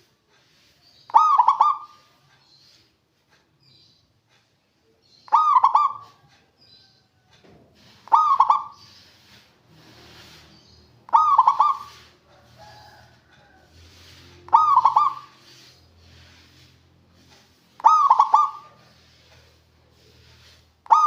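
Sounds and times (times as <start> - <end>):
dove cooing trill: 1.1 - 2.2, 5.3 - 6.2, 7.9 - 10.4, 11.1 - 16.3, 17.8 - 19.2.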